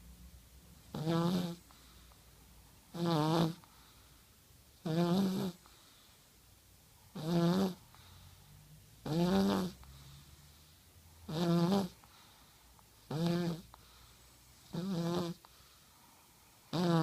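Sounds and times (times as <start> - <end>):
child snoring: 0.9 - 1.7, 2.9 - 3.7, 4.8 - 5.7, 7.1 - 7.9, 9.0 - 10.0, 11.3 - 12.0, 13.1 - 13.8, 14.6 - 15.5, 16.7 - 17.0.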